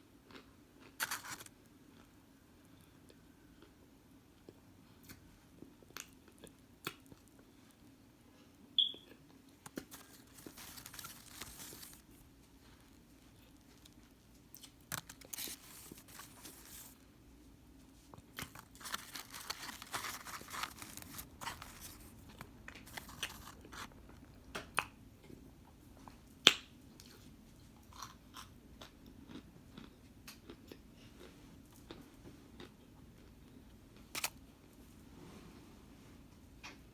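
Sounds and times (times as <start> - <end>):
crunchy chewing: 0.3 - 2.1, 9.5 - 17.0, 18.1 - 24.2.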